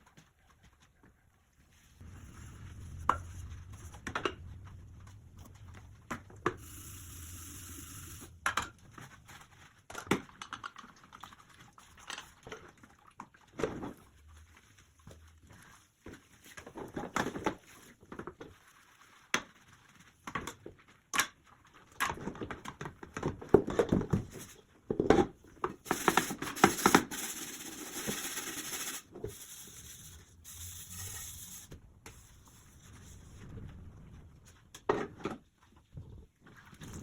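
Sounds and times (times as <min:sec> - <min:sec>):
hissing noise: 0:02.0 - 0:08.4.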